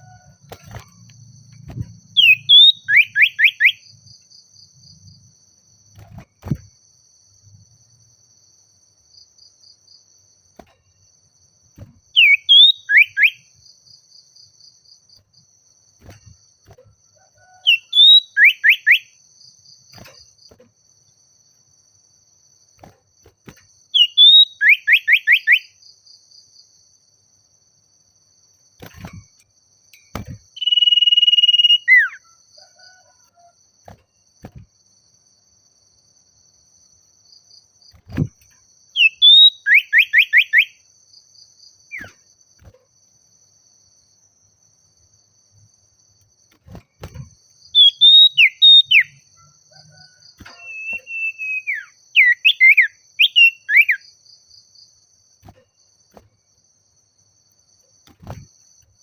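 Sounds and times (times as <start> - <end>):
bird singing falling whistles: 1.6 - 3.9, 12.1 - 13.5, 17.4 - 19.2, 23.9 - 25.8, 30.1 - 32.2, 39.0 - 40.8, 41.9 - 42.2, 47.8 - 49.2, 49.9 - 54.0.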